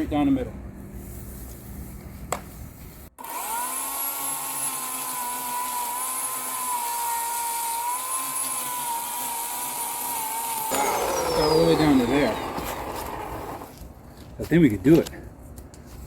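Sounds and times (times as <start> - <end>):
electric chainsaw cutting wood: 3.2 - 13.8.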